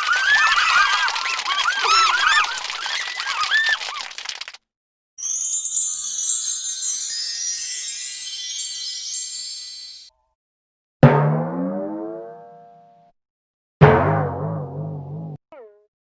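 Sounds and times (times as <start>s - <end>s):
shimmering chimes jingle: 5.2s - 10.1s.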